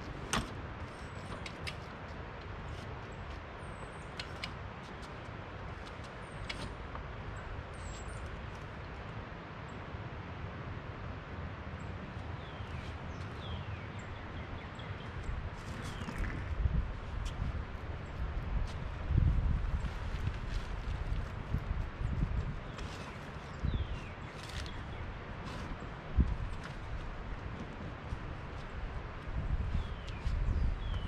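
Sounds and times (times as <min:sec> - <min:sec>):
small birds chirping: 0:11.8 - 0:27.4, 0:28.0 - 0:31.0.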